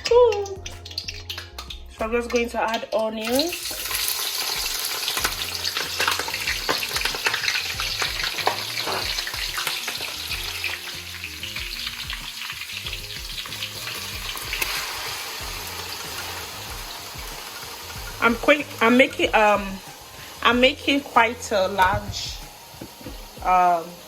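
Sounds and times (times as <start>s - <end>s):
onions sizzling in oil: 3.2s - 24.0s.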